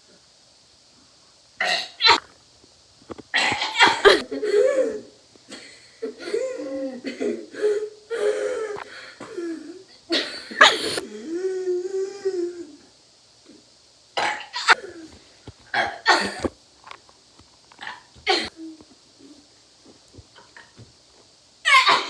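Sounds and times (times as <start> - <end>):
person coughing: 3.4 - 6.4, 10.1 - 11.1, 15.8 - 16.5, 18.3 - 18.7, 21.7 - 22.0
person laughing: 6.0 - 8.8.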